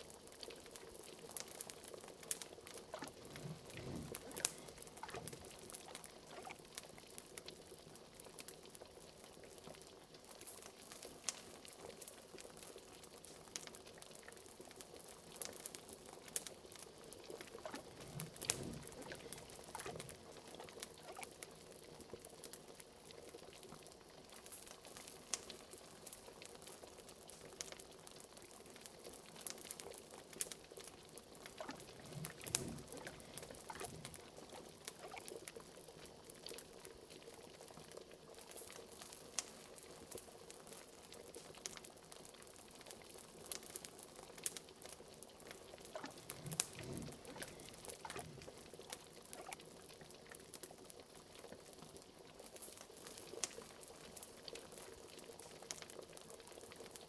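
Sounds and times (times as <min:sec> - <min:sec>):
liquid boiling in a pot: 0:00.0 - 0:57.0
fire popping and crackling: 0:00.1 - 0:08.7, 0:10.2 - 0:22.6, 0:24.3 - 0:35.7, 0:38.5 - 0:50.8
deep gurgle: 0:02.7 - 0:06.6, 0:17.4 - 0:21.4, 0:31.4 - 0:35.3, 0:45.8 - 0:49.6.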